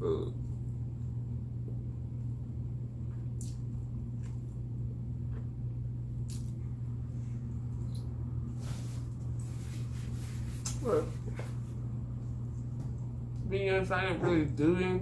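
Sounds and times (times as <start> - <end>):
steady low hum: 0.0 - 15.0
wet lip smacks and clicks: 3.3 - 4.3, 6.2 - 6.6.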